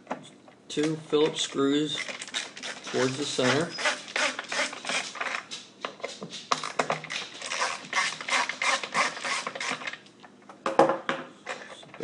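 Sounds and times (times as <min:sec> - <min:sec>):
screwdriver clicking and rasping: 0:02.0 - 0:05.6, 0:06.6 - 0:10.0.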